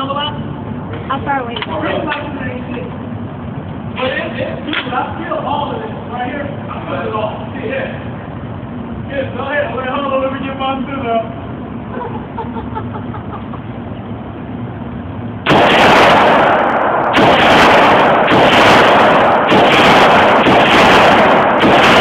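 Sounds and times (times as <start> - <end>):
rifle firing rapidly: 15.5 - 22.0.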